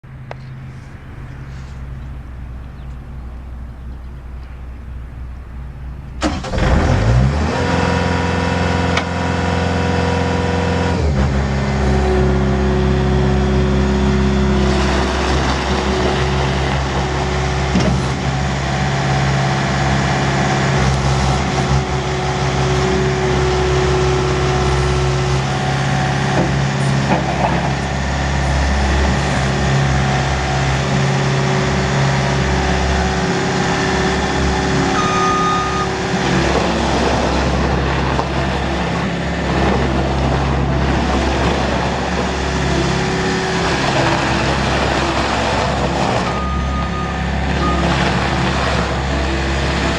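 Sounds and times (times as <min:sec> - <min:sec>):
diesel engine starting and running: 0:00.0 - 0:49.9.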